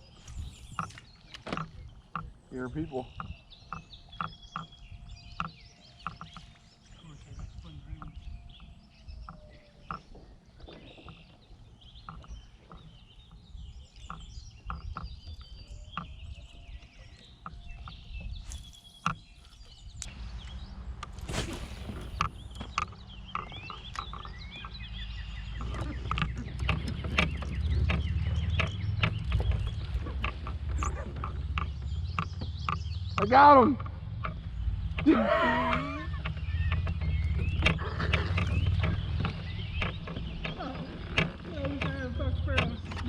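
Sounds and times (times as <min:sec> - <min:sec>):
birds chirping: 0:00.0 - 0:43.0
scattered clicks and knocks: 0:00.6 - 0:06.6, 0:12.0 - 0:13.4, 0:22.1 - 0:43.0.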